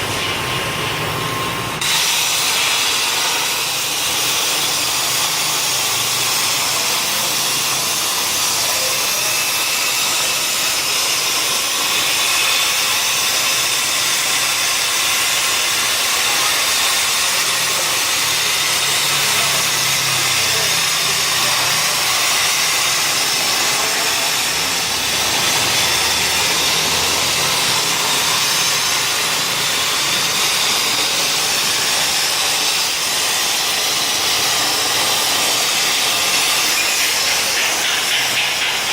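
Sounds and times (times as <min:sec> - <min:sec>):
plasma cutter hissing: 0:00.0 - 0:38.9.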